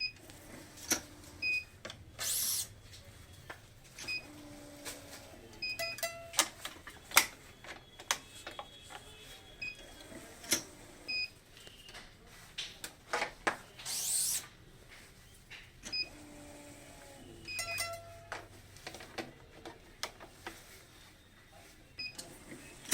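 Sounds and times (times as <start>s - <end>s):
short beeps: 5.6s - 6.5s, 17.4s - 18.3s
sharp clicks taps and pings: 5.7s - 6.6s, 17.5s - 18.1s.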